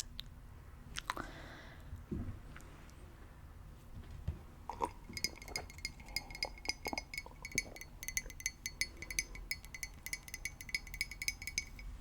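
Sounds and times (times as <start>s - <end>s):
ringing clinking taps: 5.0s - 12.0s.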